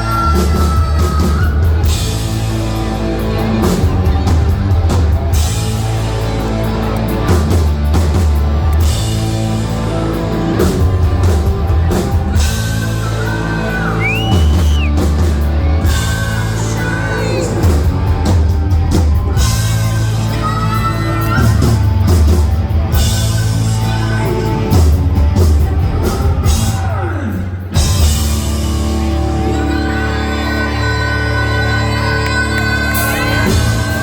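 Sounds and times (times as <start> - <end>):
person singing lead vocals: 0.0 - 4.8, 9.9 - 34.0
hard rock band playing live: 0.0 - 34.0.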